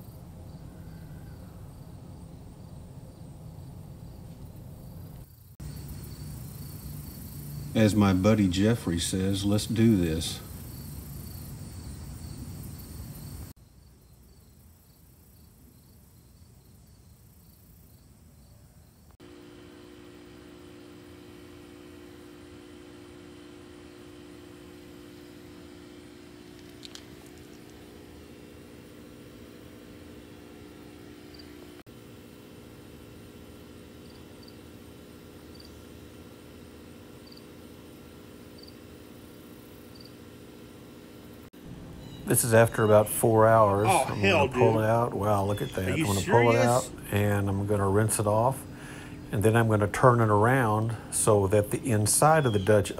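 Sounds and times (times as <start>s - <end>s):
electrical hum: 0.0s - 13.6s, 19.1s - 52.9s
insects chirping: 0.0s - 52.9s
low background noise: 41.6s - 52.9s.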